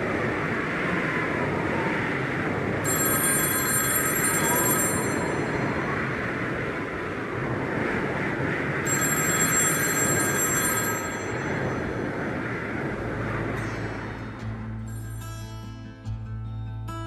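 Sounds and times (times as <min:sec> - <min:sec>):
steady rushing noise: 0:00.0 - 0:16.3
telephone bell ringing: 0:02.8 - 0:05.9, 0:08.9 - 0:12.0.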